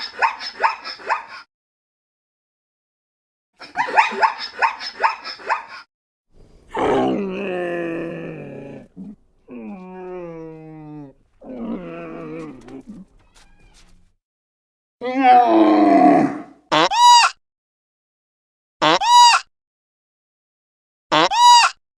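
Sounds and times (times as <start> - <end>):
animal calling: 6.4 - 14.1.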